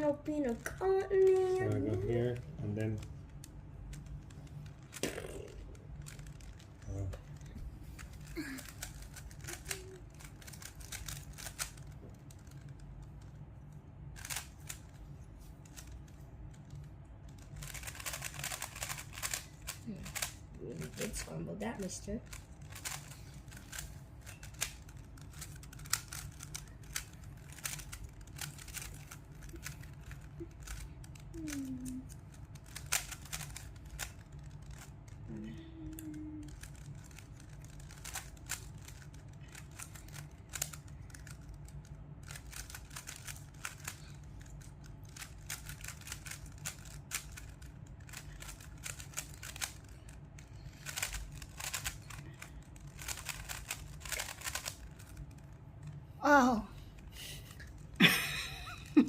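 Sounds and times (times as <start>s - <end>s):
steady low hum: 0.0s - 59.0s
plastic cube clicking as twisted: 7.4s - 12.8s, 14.2s - 15.0s, 17.3s - 20.4s, 22.2s - 34.9s, 36.4s - 50.2s, 50.8s - 55.4s.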